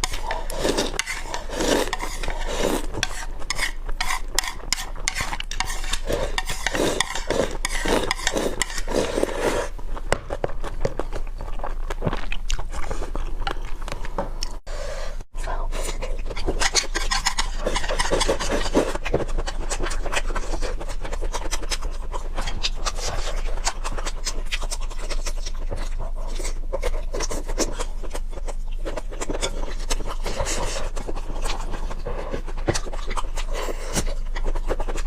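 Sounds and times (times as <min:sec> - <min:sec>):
close-miked chewing sounds: 0:00.0 - 0:14.7, 0:15.3 - 0:35.0.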